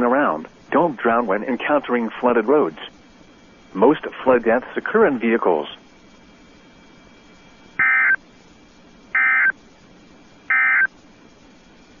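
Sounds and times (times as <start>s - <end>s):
warbling data tone bursts: 7.8s - 8.2s, 9.2s - 9.6s, 10.5s - 10.9s.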